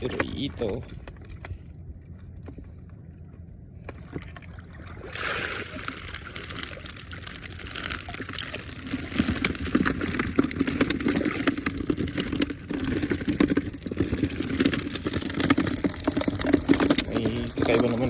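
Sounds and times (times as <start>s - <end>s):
water sloshing and splashing: 0.0s - 18.0s
fish thrashing in water: 3.8s - 18.0s.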